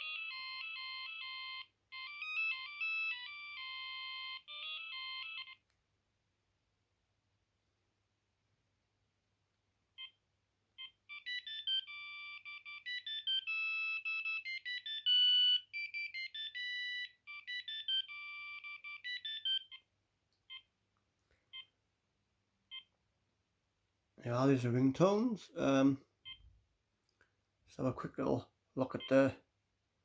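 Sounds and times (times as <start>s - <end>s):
electronic ringtone melody: 0.0s - 5.6s, 10.8s - 19.9s
short phone beeps: 10.8s - 19.8s, 22.7s - 22.9s, 26.2s - 26.5s.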